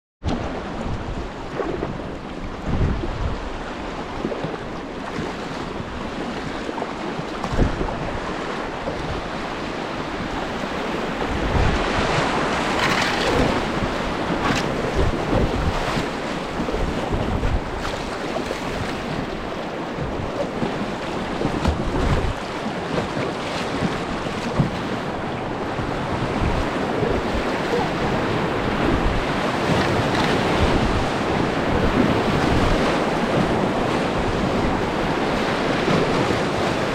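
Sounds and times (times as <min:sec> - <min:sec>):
wind buffeting microphone: 0:00.2 - 0:36.9
low thumps on microphone: 0:00.3 - 0:03.4, 0:07.4 - 0:08.0
river rapid rushing: 0:17.6 - 0:36.9.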